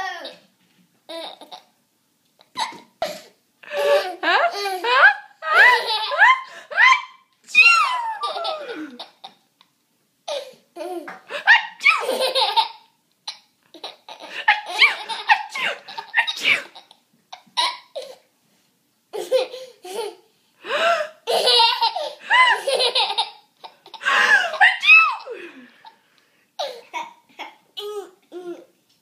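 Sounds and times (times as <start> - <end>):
young child laughing: 2.5 - 9.4, 13.8 - 18.0, 21.3 - 25.6.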